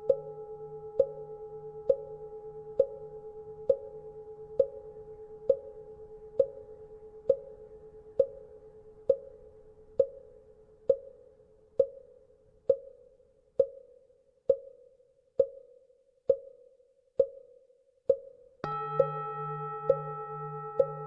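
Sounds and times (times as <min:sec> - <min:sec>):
faint bell hum: 0:00.0 - 0:10.5, 0:18.6 - 0:21.0.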